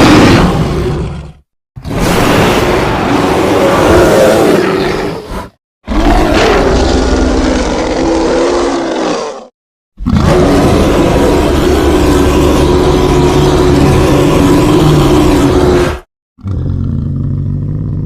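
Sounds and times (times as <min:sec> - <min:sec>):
creature roaring growls: 0:00.0 - 0:02.0, 0:02.8 - 0:18.0.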